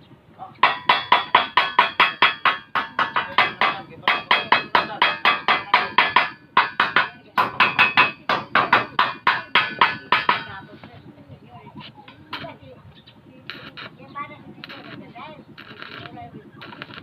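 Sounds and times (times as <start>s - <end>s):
hammer striking steel: 0.6s - 10.7s.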